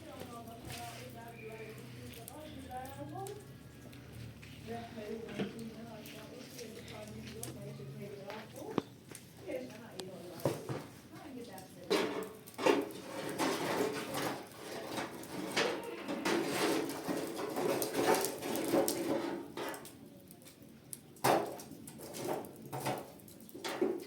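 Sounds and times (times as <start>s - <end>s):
hard objects knocking and clattering: 10.4s - 11.0s, 11.9s - 19.9s, 21.2s - 24.0s.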